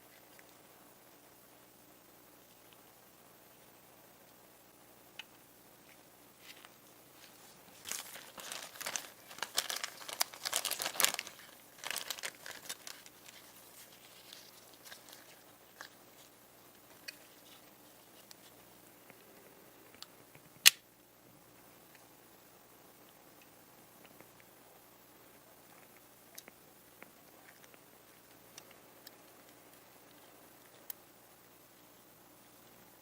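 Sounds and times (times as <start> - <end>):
crinkling and tearing material: 6.4 - 18.6.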